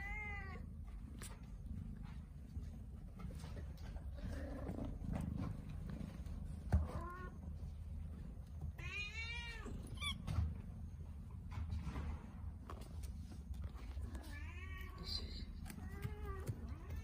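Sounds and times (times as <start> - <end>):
cat meowing: 0.0 - 0.6, 8.8 - 10.2.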